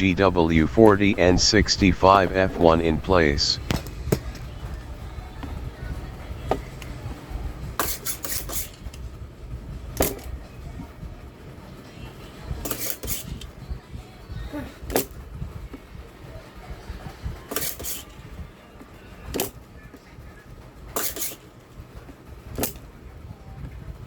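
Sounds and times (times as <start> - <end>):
low steady hum: 0.0 - 7.8.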